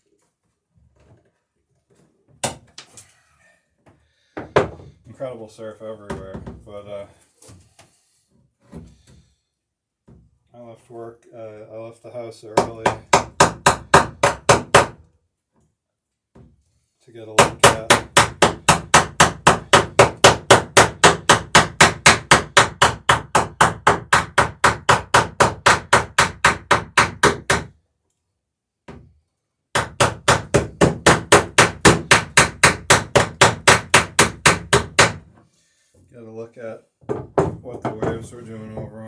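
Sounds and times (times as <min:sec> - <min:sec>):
hammer driving rivets into wood: 0:12.6 - 0:15.0, 0:17.4 - 0:27.7, 0:29.8 - 0:35.2.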